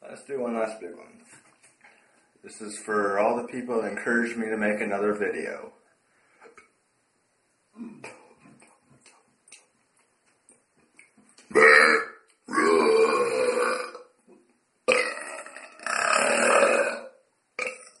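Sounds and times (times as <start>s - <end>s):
person burping loudly: 11.5s - 14.2s, 14.9s - 18.0s.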